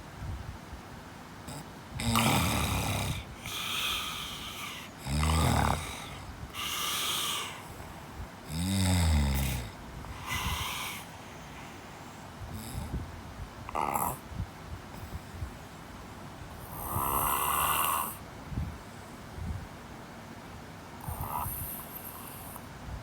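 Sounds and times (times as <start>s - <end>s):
person snoring: 1.5s - 7.7s, 8.5s - 11.6s, 16.6s - 18.2s, 21.0s - 22.6s.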